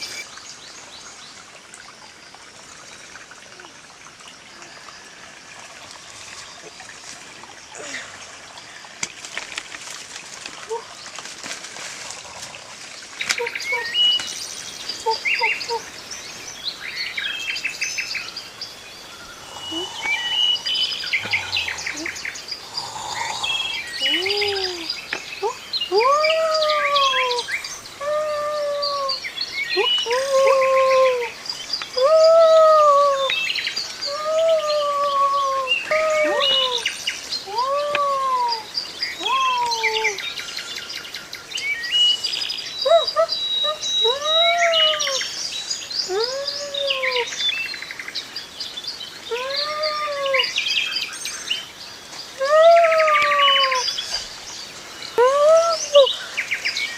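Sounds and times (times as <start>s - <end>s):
birds chirping and trilling: 12.6s - 56.9s
rising falling whistled bird call: 16.9s - 31.1s.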